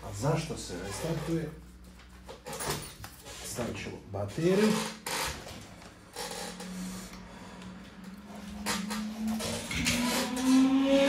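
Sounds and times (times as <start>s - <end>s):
laptop fan spinning up: 6.2s - 11.0s.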